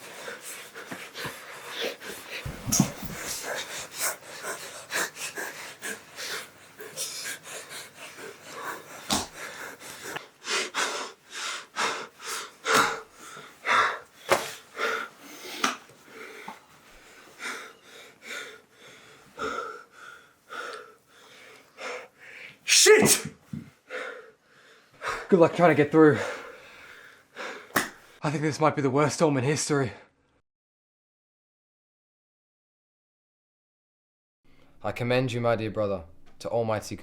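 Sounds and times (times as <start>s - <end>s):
person breathing hard: 0.0s - 22.7s, 23.5s - 25.4s, 26.0s - 28.2s.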